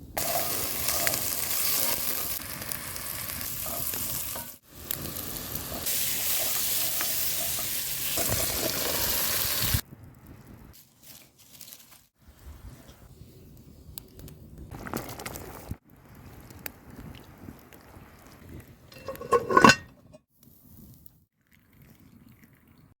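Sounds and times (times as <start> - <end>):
food sizzling in a hot pan: 0.0 - 9.8.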